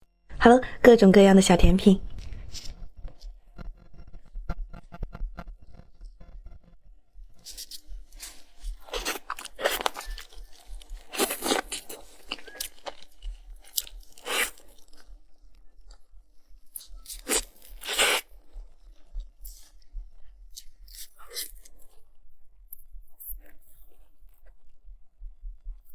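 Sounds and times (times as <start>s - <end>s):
loud crunches of food: 7.4s - 15.1s, 17.1s - 18.2s
quiet chewing: 7.4s - 22.1s.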